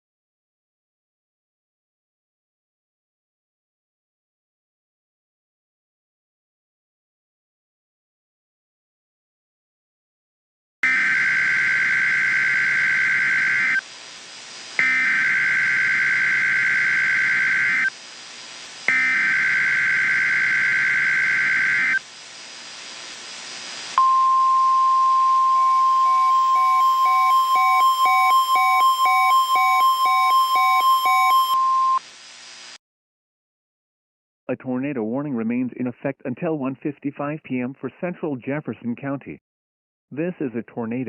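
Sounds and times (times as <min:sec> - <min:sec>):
steady high attention tone: 0:24.0 - 0:32.0
rapid electronic beeping: 0:25.4 - 0:32.0.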